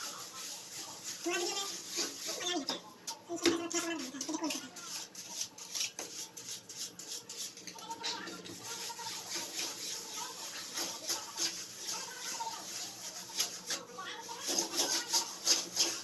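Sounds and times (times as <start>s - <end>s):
plastering tool scraping wall: 3.5s - 16.0s
faint voices: 7.6s - 16.0s.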